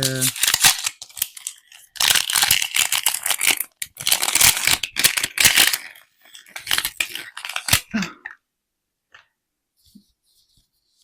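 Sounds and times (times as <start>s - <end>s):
plastic wrapping crinkling and tearing: 0.0s - 7.9s.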